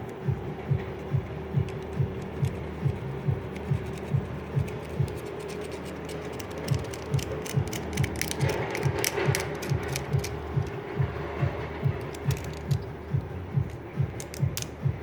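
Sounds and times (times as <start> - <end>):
hum: 0.0 - 15.0
small parts clicking and scratching: 0.9 - 10.8, 11.8 - 14.8.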